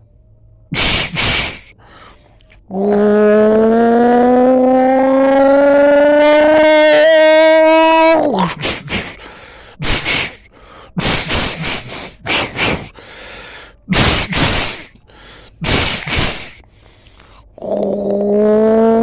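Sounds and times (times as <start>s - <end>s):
breathy hissing bursts: 0.8s - 2.2s, 8.5s - 17.1s.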